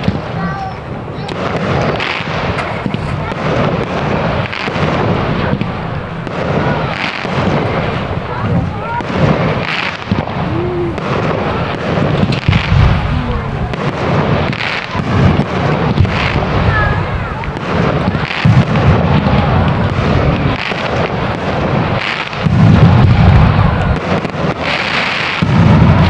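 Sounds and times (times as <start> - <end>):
crowd voices: 0.0 - 26.0
fireworks booming and crackling: 0.0 - 26.0.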